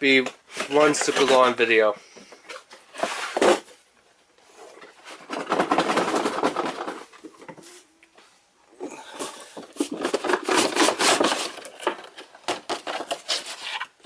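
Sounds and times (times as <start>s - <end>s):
cardboard scraping and rubbing: 2.9s - 3.8s, 9.3s - 14.0s.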